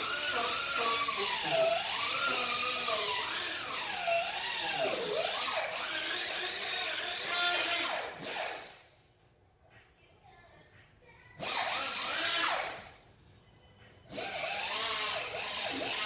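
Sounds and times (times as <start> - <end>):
power tool whining: 0.0 - 8.9, 11.4 - 13.0, 14.1 - 16.0.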